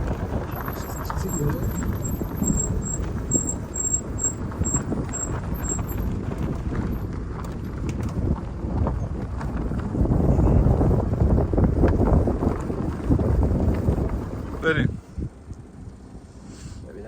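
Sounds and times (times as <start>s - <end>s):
vehicle rumbling on dirt track: 0.0s - 17.0s.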